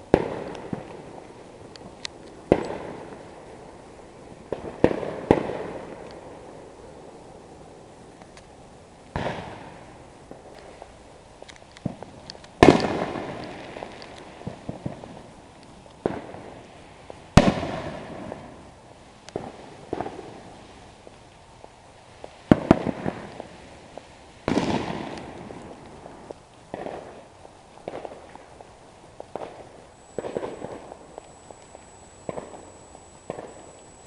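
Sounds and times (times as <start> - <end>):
fireworks bangs with echo: 0.0 - 3.7, 4.4 - 6.7, 9.1 - 10.8, 11.8 - 15.3, 16.0 - 16.6, 17.3 - 18.7, 19.3 - 20.8, 22.2 - 33.8
firework pops and crackles: 0.0 - 34.0.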